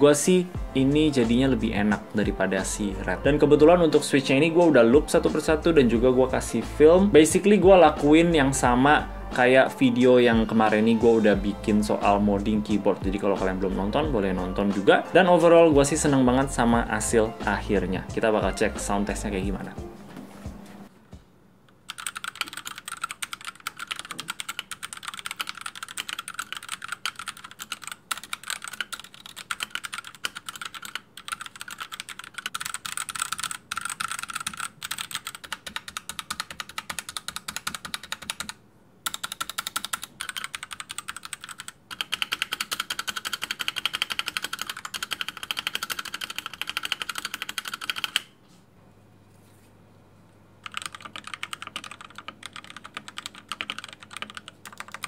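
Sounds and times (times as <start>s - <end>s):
mechanical keyboard typing: 21.8s - 48.3s, 50.6s - 55.0s.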